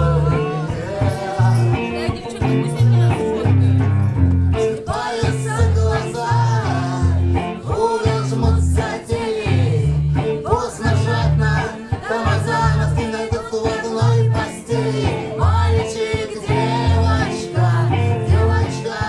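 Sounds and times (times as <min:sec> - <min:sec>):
man singing: 0:00.0 - 0:03.5, 0:04.6 - 0:19.0
bass line: 0:00.0 - 0:19.0
guitar: 0:00.0 - 0:19.0
drums beat: 0:07.6 - 0:19.0.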